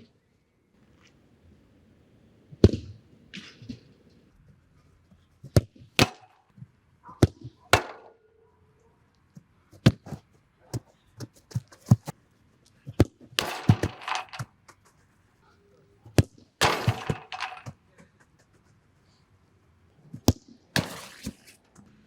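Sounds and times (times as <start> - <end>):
soccer ball kick thuds: 2.6 - 3.9, 5.4 - 6.3, 7.2 - 8.1, 12.8 - 14.8, 16.1 - 17.8, 20.2 - 21.5.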